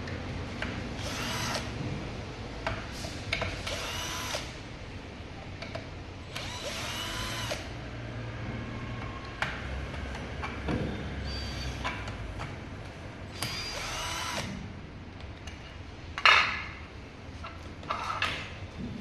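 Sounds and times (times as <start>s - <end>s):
power drill motor whine: 1.0s - 1.7s, 3.7s - 4.5s, 6.3s - 7.7s, 13.4s - 14.5s.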